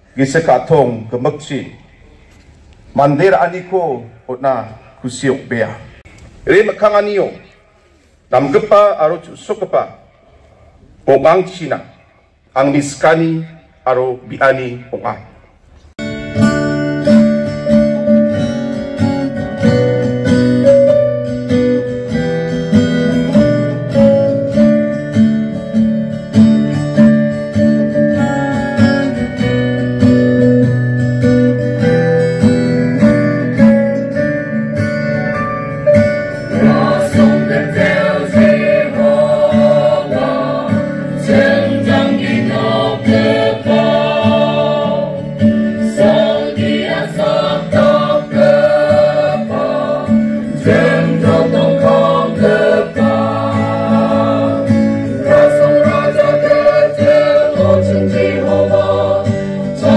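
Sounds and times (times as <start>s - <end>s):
strummed acoustic guitar: 16.0s - 59.9s
choir singing: 36.5s - 59.9s.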